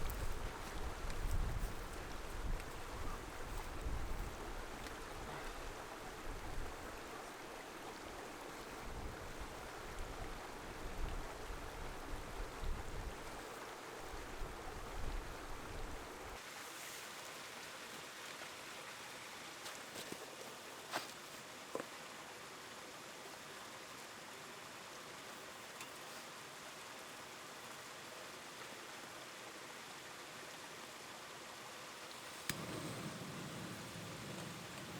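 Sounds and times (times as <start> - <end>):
wind buffeting microphone: 0.0 - 4.4
steady rushing hiss: 0.0 - 7.5, 31.9 - 34.9.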